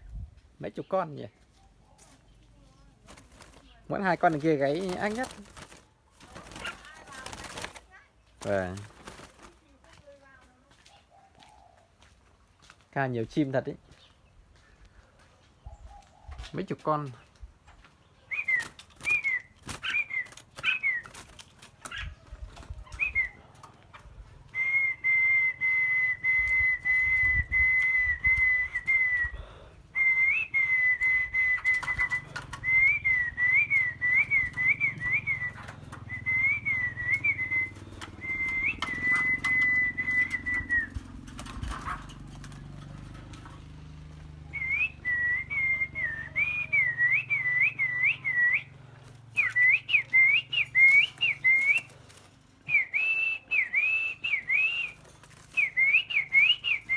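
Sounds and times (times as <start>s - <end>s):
songbird whistling song: 17.2s - 41.1s, 44.4s - 48.7s, 49.3s - 56.9s.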